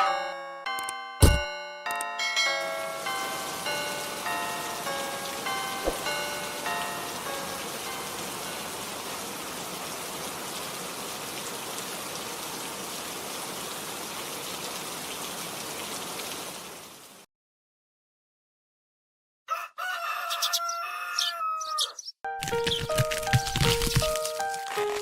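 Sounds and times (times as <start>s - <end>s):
bell-like chime notes: 0.0s - 8.6s.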